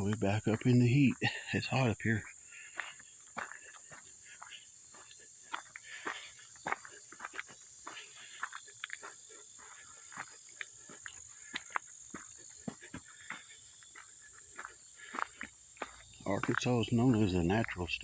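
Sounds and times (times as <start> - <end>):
footsteps crunching on trail: 0.0 - 18.0
insects droning: 0.0 - 18.0.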